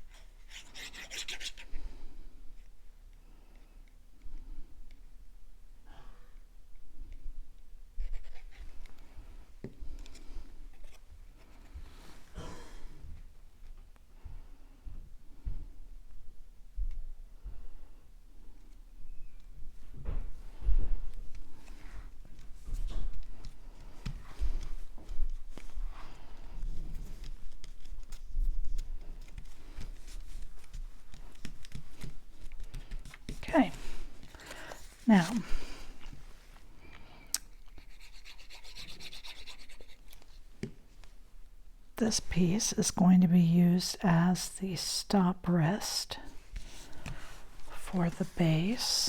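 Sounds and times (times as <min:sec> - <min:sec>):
paper rubbing and scratching: 0:00.1 - 0:01.8, 0:37.7 - 0:40.4
paper rustling: 0:23.2 - 0:36.6, 0:46.5 - 0:48.9.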